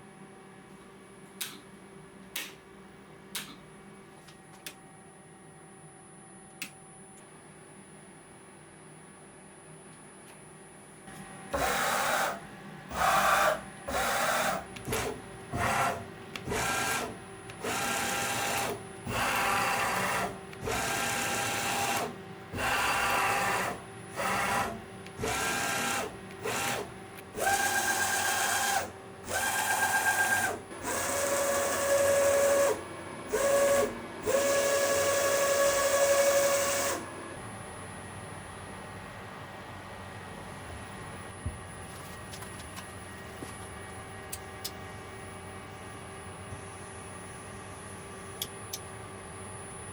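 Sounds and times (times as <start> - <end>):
machine motors whining: 11.5 - 38.2.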